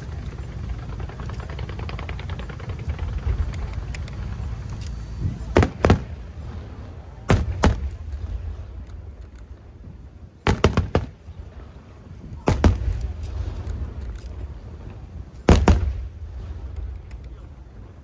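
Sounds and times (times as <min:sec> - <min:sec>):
steady low rumble: 0:00.0 - 0:18.0
fireworks bursting: 0:00.4 - 0:08.8, 0:10.4 - 0:11.6, 0:12.4 - 0:16.8.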